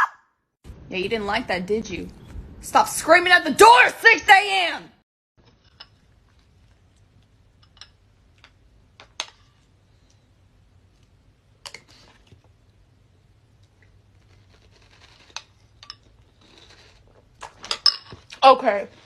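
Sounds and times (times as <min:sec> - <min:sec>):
faint low room hum: 0:05.4 - 0:19.0.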